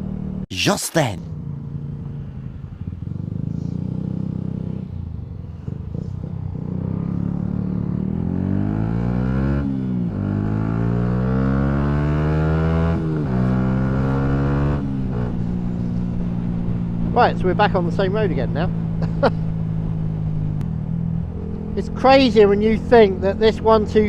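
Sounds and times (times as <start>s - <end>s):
motorcycle engine accelerating: 1.3s - 24.0s.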